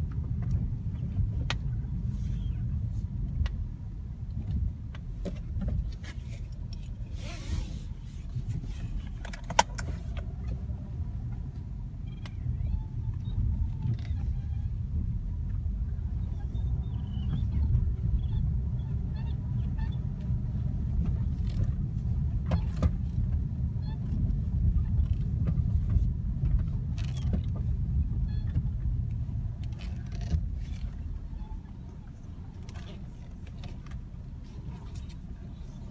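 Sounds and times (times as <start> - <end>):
low car cabin rumble: 0.0 - 35.9
faint high squeaks: 29.7 - 33.4.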